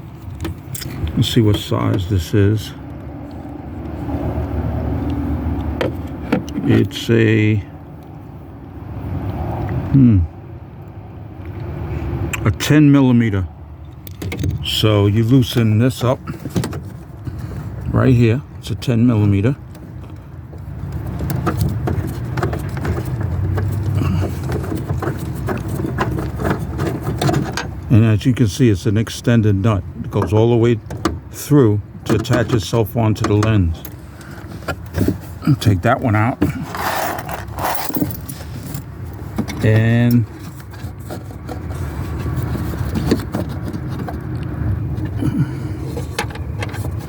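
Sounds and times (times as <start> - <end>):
tools clicking and rattling: 13.8 - 14.6, 36.5 - 41.7.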